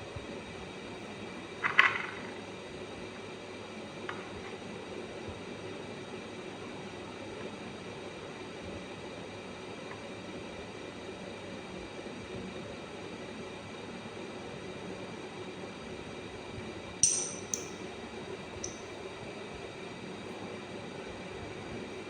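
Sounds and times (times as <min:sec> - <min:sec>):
small hard object clinking: 0:17.0 - 0:17.8, 0:18.6 - 0:18.9.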